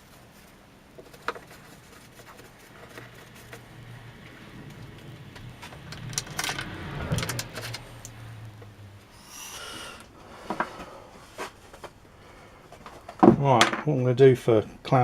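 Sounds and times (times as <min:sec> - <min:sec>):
low hum: 0:01.6 - 0:11.3.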